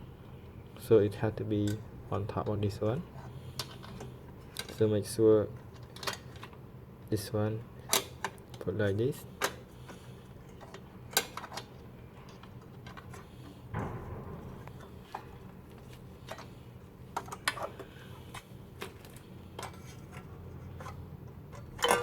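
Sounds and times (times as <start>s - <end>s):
faint low hum: 8.5s - 21.9s.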